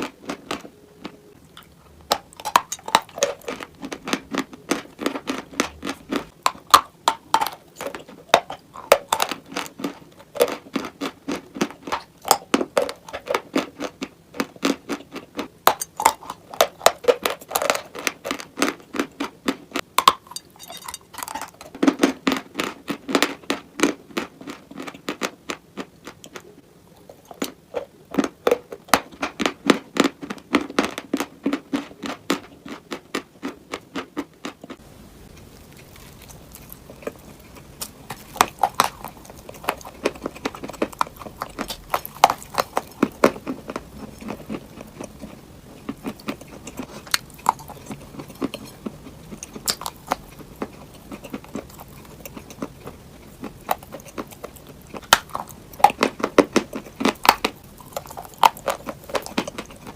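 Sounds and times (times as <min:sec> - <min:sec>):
faint hiss: 0:34.8 - 0:40.0.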